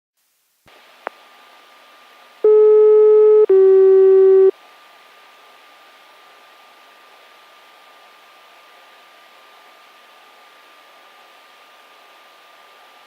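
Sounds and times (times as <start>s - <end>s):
steady hiss: 0.2s - 2.5s
electronic tones: 2.5s - 4.5s.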